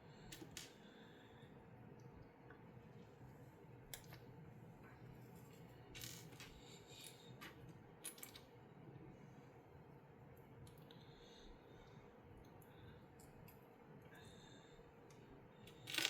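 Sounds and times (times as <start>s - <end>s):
plastic pieces clicking together: 15.7s - 16.0s.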